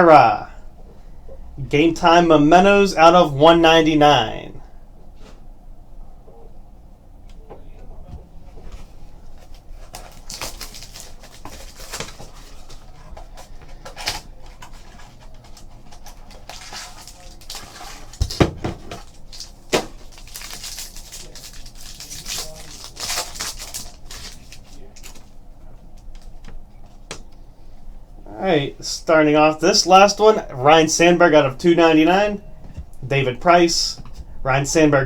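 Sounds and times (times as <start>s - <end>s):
cards being handled: 9.4s - 27.4s
wrapper crinkling and tearing: 9.8s - 25.3s.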